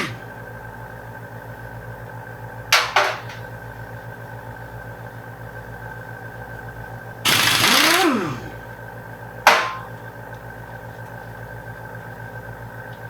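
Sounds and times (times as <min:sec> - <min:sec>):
power tool on a bolt: 0:00.0 - 0:00.4, 0:07.3 - 0:08.7
sharp metallic clank: 0:09.5 - 0:10.0.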